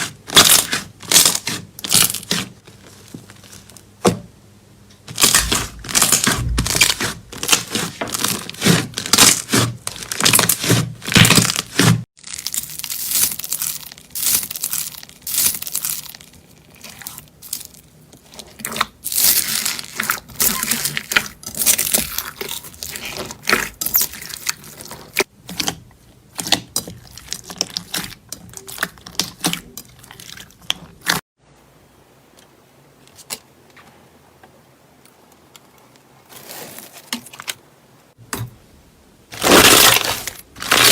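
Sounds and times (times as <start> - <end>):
slime crackling and popping: 5.1 - 17.8, 18.6 - 25.7, 39.4 - 40.9.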